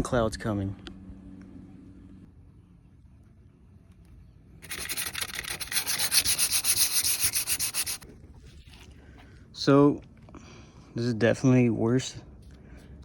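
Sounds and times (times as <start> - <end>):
sandpaper rasping on metal: 4.6 - 8.0.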